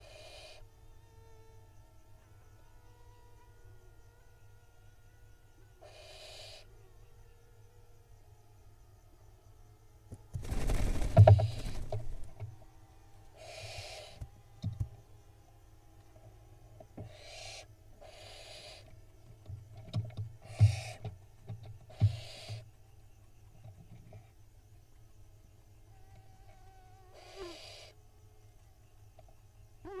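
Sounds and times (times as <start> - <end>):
owl chick hissing call: 0.0 - 0.6, 5.8 - 6.7, 13.4 - 14.2, 17.1 - 18.9, 22.0 - 22.6, 27.1 - 28.0
steady low hum: 0.0 - 30.0.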